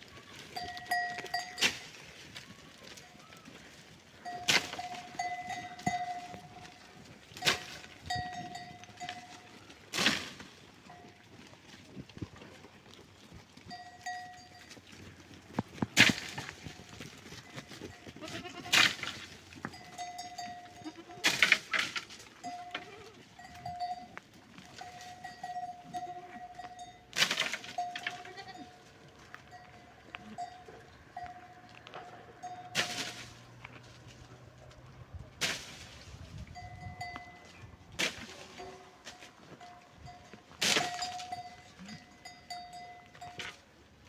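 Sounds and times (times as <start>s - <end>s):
goats bleating: 17.9s - 21.4s, 22.4s - 23.8s, 24.8s - 26.9s, 28.0s - 28.9s.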